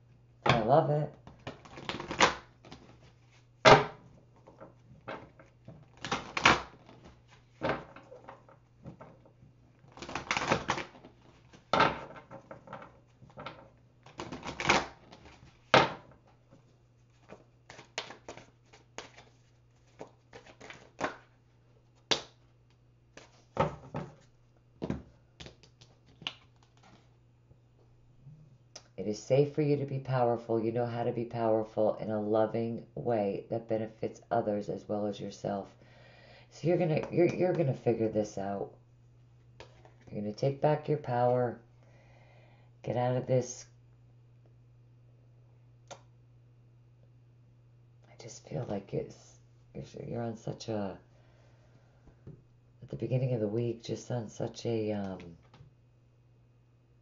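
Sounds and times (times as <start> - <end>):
faint low hum: 0.0 - 57.0
cards clicking and snapping: 17.7 - 21.3.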